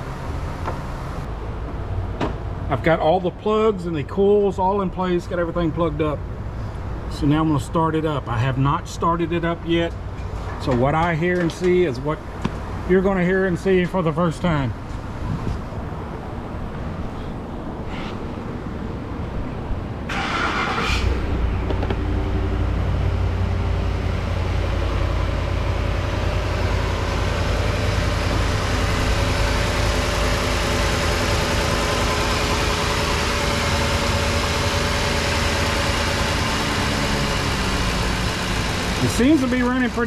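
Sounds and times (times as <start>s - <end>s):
engine idling: 0.0s - 1.3s, 20.1s - 40.0s
engine cranking: 20.1s - 22.0s, 26.4s - 40.0s.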